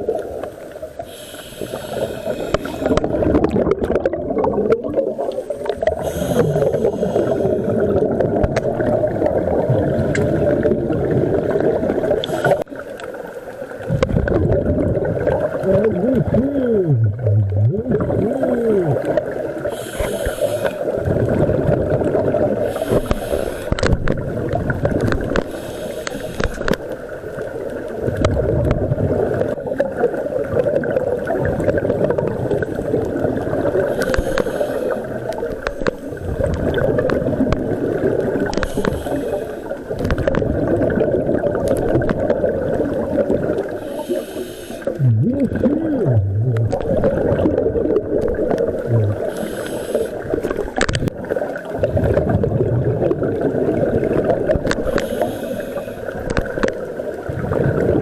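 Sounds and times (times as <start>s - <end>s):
exhaled air bubbling underwater: 0.0s - 58.0s
regulator inhalation hiss: 1.0s - 3.0s, 5.6s - 7.9s, 12.2s - 12.7s, 19.6s - 21.0s, 22.6s - 23.8s, 25.4s - 26.7s, 33.9s - 35.2s, 38.6s - 39.7s, 43.8s - 45.0s, 49.1s - 50.3s, 54.8s - 56.1s.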